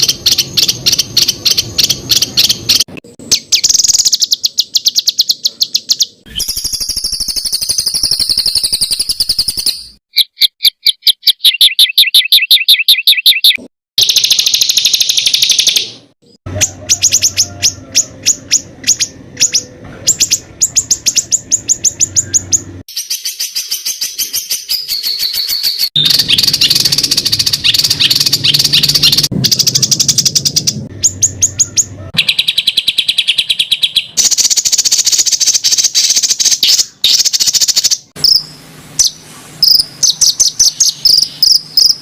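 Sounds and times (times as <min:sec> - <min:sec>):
songbird harsh rapid trills: 0:00.0 - 0:42.0.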